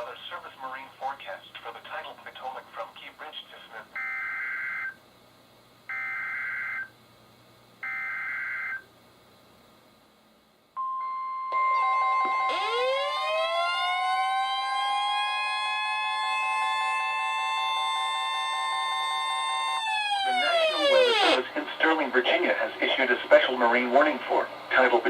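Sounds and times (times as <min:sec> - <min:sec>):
steady warning alarm tone: 0:04.0 - 0:05.0, 0:05.9 - 0:07.0, 0:07.8 - 0:08.9, 0:10.8 - 0:21.4
siren winding up: 0:11.0 - 0:21.4.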